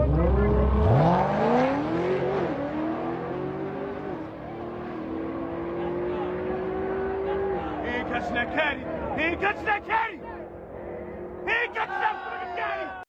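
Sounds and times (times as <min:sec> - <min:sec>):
car engine accelerating: 0:00.0 - 0:09.7.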